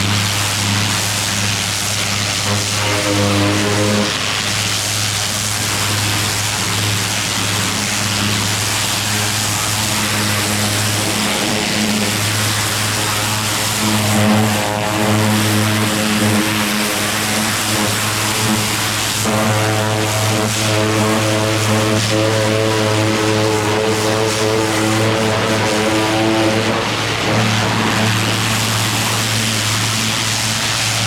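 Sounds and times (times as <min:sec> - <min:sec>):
pressure washer engine drone: 0:00.0 - 0:31.0
water spray hissing: 0:00.0 - 0:31.0.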